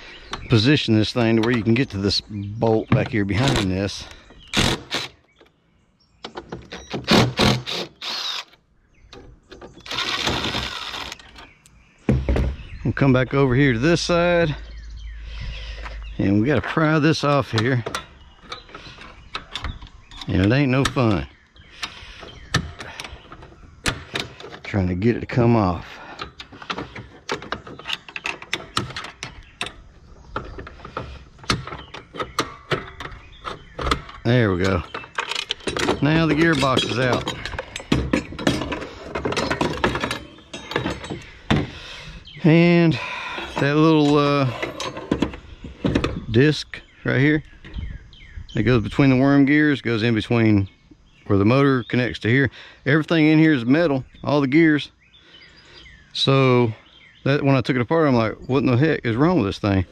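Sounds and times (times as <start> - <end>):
tool clicks and clunks: 0.2 - 5.5, 6.2 - 12.6, 15.8 - 41.8, 43.3 - 46.4.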